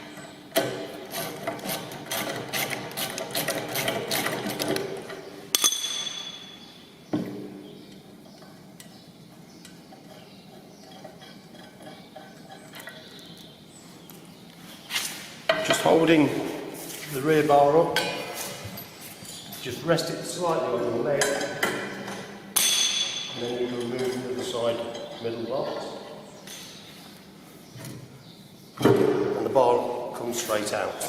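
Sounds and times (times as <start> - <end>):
sharp metal clanks: 5.5 - 6.8, 21.2 - 25.2.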